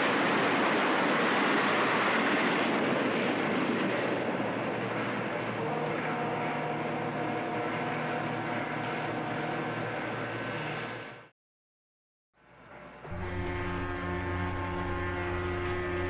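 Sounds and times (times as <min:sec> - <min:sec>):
loud vehicle noise: 0:13.1 - 0:16.0.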